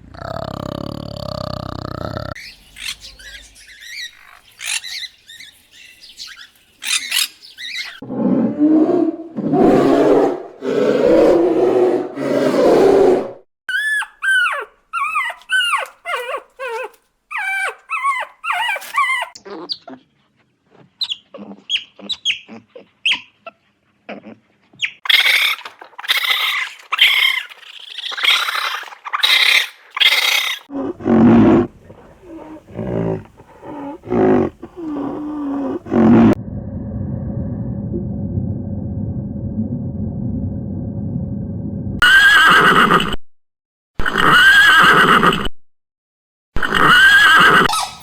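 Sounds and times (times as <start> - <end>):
faint chirps: 0.2 - 8.0
animal yelps: 2.0 - 8.0, 13.7 - 20.0, 21.0 - 23.6, 24.8 - 30.8, 46.6 - 48.0
harsh raspy animal cries: 25.0 - 36.4, 44.0 - 45.4, 46.6 - 48.0.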